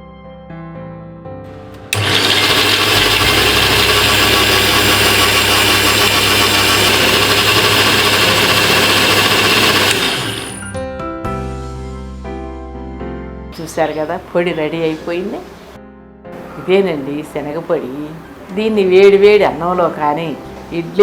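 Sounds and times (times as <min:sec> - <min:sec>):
mixer grinder running: 0:01.9 - 0:10.8
soft background music: 0:10.7 - 0:21.0.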